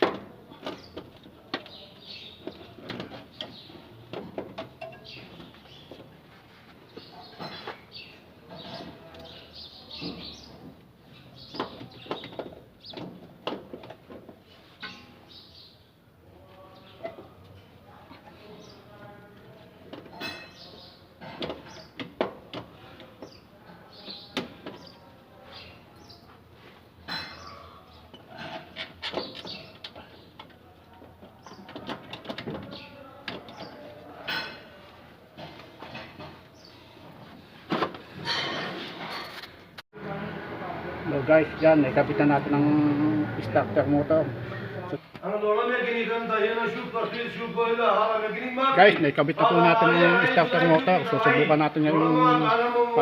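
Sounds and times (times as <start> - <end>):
birds chirping: 0.5 - 6.2, 6.8 - 13.4, 14.7 - 17.7, 20.1 - 22.2, 22.8 - 26.4, 27.1 - 34.5, 36.2 - 37.0
tools clinking on metal: 20.1 - 20.7.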